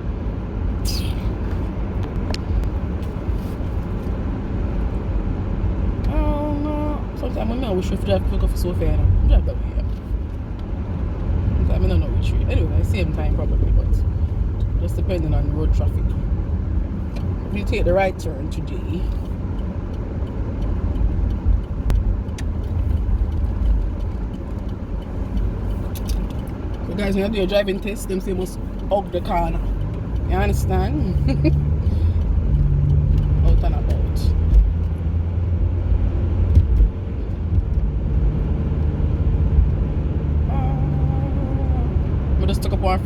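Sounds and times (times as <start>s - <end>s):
car engine and tyre rumble: 0.0s - 43.0s.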